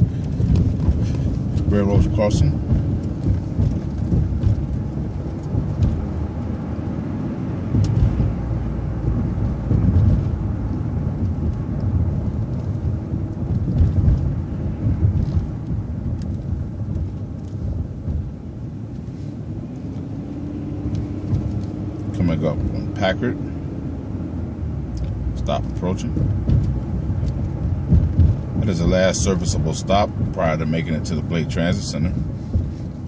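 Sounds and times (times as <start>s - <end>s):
bus engine and road rumble: 0.0s - 33.0s
wheels thumping over rails: 26.0s - 30.4s.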